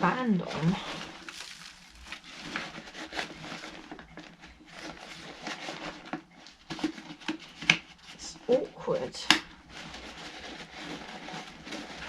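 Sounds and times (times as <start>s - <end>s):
hands rustling vacuum dust bag: 0.3s - 8.0s.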